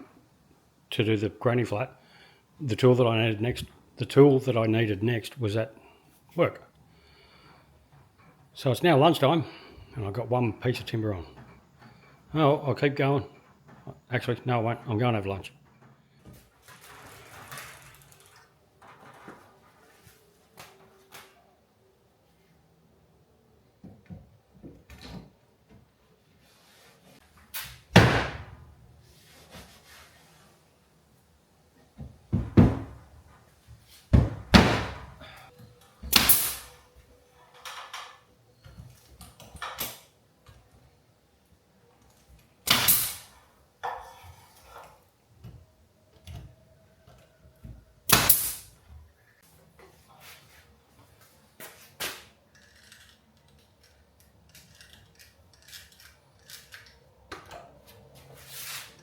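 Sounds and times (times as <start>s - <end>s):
door slam bang: 27.9s - 28.7s, 34.2s - 35.2s.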